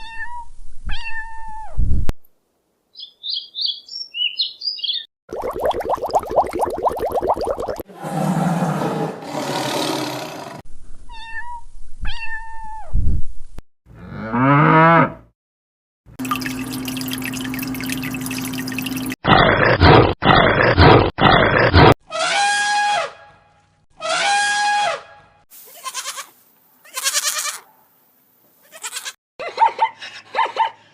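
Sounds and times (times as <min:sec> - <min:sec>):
goat-like bleat: 0:25.7 - 0:27.7, 0:28.6 - 0:29.2.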